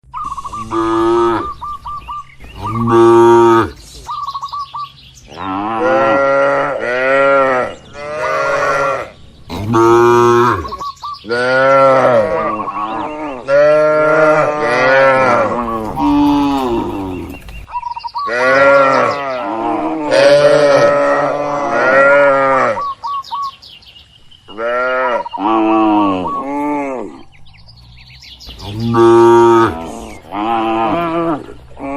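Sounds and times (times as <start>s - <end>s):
cattle mooing: 0.5s - 1.6s, 2.6s - 3.8s, 5.3s - 17.4s, 18.3s - 22.9s, 28.6s - 31.9s.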